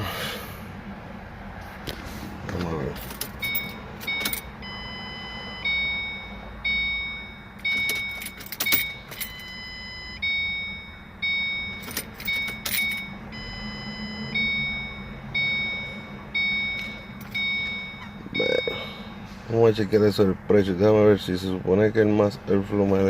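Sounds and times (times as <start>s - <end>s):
electronic warning chime dinging: 3.3s - 19.3s.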